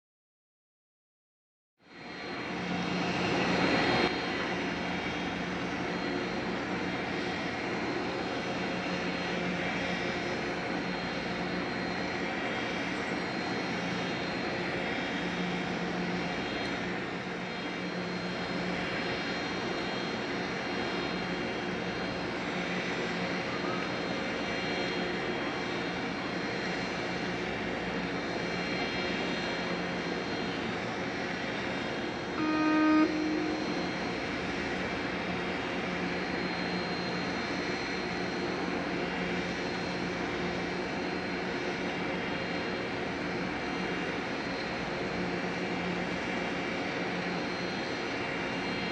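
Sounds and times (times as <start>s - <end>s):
ferry engines droning: 29.0s - 41.1s
short horn blast: 32.4s - 34.4s
high whining tones: 32.4s - 35.2s.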